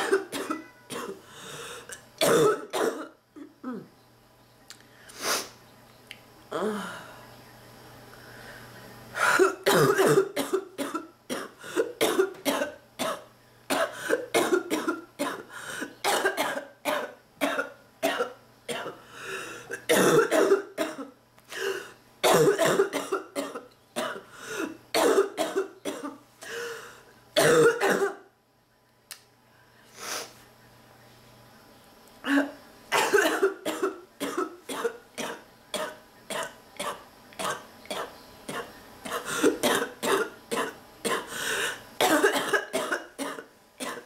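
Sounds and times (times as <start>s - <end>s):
person coughing harshly: 0.0s - 1.2s, 2.2s - 3.8s, 9.2s - 19.0s, 19.7s - 26.2s, 27.4s - 28.2s, 32.3s - 41.4s, 42.0s - 44.0s.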